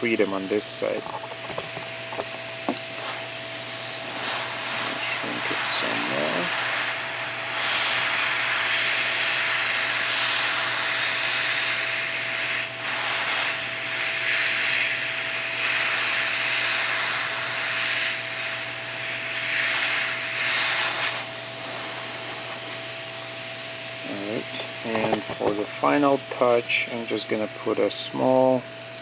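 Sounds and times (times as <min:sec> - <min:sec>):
heat gun blowing air: 0:00.0 - 0:29.0.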